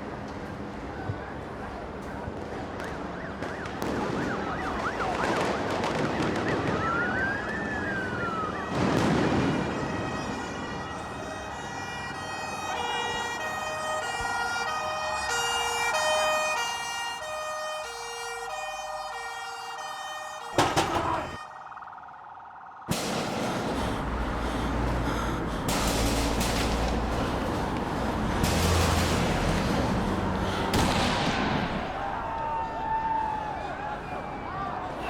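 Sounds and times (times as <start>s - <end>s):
street noise: 0.0s - 21.6s, 22.8s - 35.0s
siren wailing: 0.6s - 22.9s, 31.4s - 35.0s.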